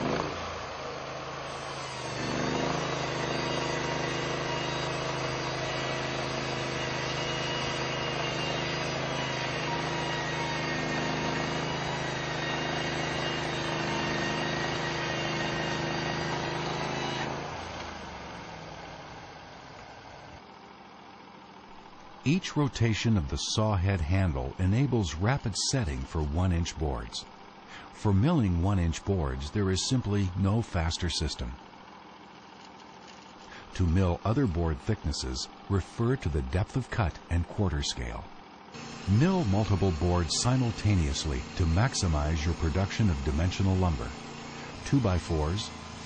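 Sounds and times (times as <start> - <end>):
sawmill engine running: 0.0 - 46.0
saw blade cutting log hiss: 38.8 - 46.0.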